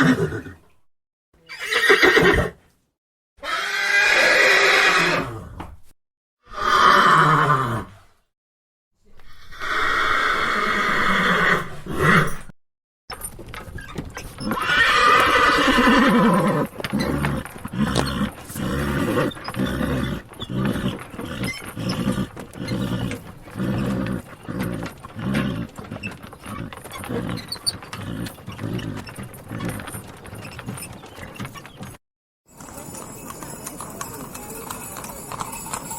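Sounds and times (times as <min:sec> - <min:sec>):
horses neighing: 0:00.0 - 0:00.7, 0:01.5 - 0:02.6, 0:03.4 - 0:05.4, 0:06.5 - 0:07.9, 0:13.9 - 0:32.0
long falling horse whinny: 0:01.5 - 0:02.6, 0:03.4 - 0:05.6, 0:06.5 - 0:08.0, 0:14.4 - 0:25.8.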